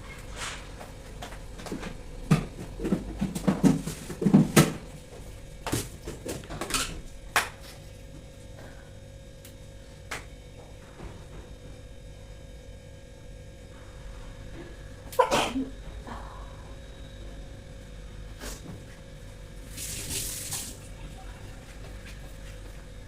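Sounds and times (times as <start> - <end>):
faint steady hum: 0.0 - 23.0
objects knocking and clattering: 1.6 - 4.8.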